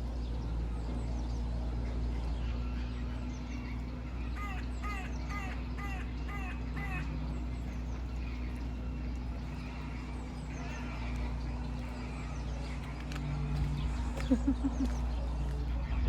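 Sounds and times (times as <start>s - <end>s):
small birds chirping: 0.0s - 16.0s.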